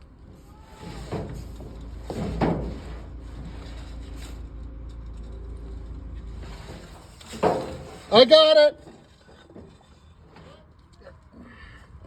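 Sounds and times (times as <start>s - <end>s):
vehicle engine running low: 0.0s - 8.1s.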